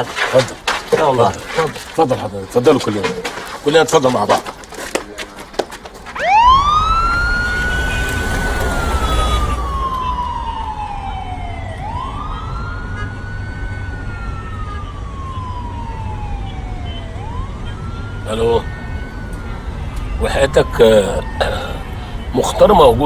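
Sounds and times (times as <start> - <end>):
police siren wailing: 6.1 - 23.0
low vehicle rumble: 6.2 - 22.3.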